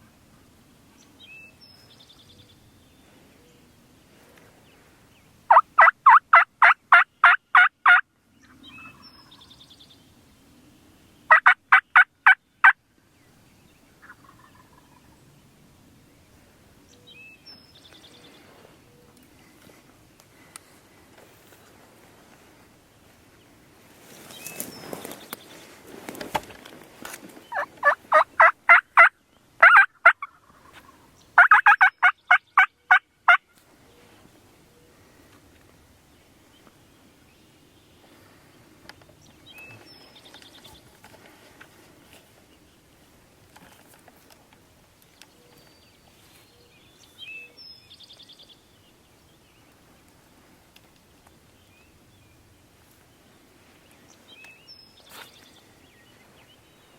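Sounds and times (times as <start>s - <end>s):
wild turkey yelping: 5.5s - 9.4s, 11.3s - 12.8s, 14.0s - 15.1s, 27.5s - 33.4s.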